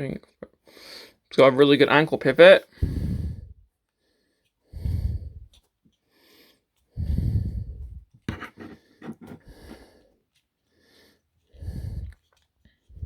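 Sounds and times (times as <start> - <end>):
breath puffs into microphone: 2.7 - 3.6, 4.7 - 5.5, 6.4 - 10.1, 11.5 - 12.3.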